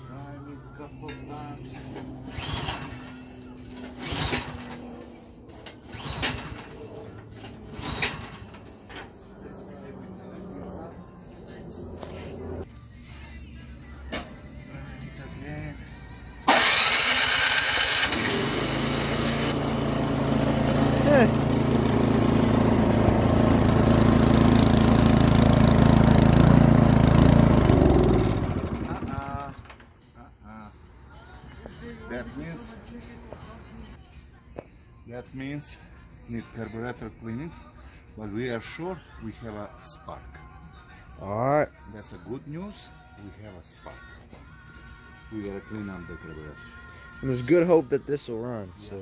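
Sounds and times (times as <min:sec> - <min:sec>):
recoil starter pull whirring: 0:16.5 - 0:19.6
snowblower engine running: 0:16.5 - 0:29.4.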